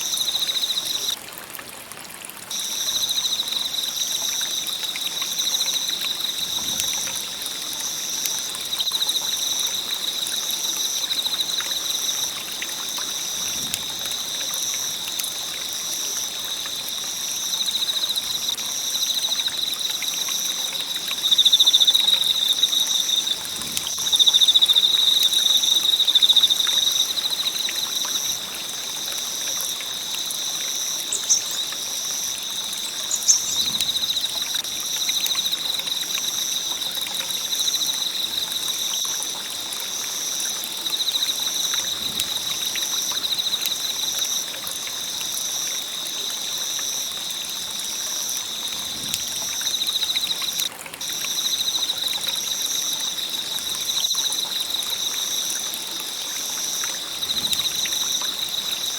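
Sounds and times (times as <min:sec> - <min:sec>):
high-pitched insect trill: 0:17.3 - 0:28.5, 0:30.8 - 0:36.6.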